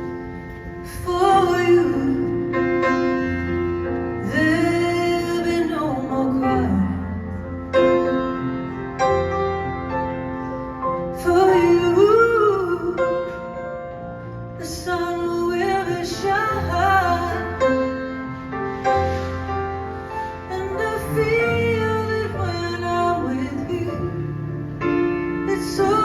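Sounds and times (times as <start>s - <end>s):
woman singing: 0.8s - 2.7s, 4.2s - 7.4s, 11.2s - 13.4s, 14.6s - 17.7s, 20.5s - 24.5s, 25.4s - 26.0s.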